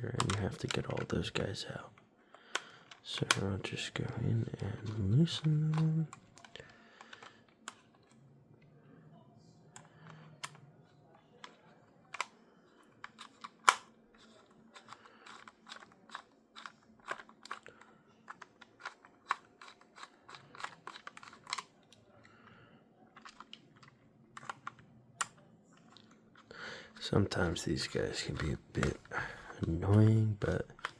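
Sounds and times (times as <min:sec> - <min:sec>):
screwdriver clicking and scraping: 0:13.0 - 0:17.7, 0:18.3 - 0:21.7.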